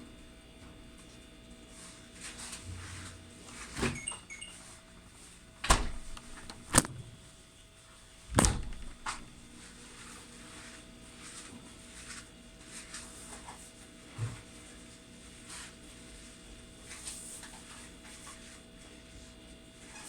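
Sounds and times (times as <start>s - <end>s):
fridge humming: 5.6s - 7.4s, 8.2s - 9.8s
fridge door thuds and knocks: 5.7s - 7.1s, 8.3s - 9.5s.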